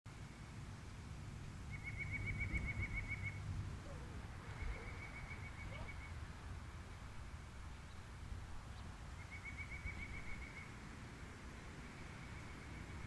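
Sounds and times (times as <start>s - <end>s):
bird singing a fast trill: 1.6s - 3.4s, 4.5s - 6.2s, 8.7s - 10.8s.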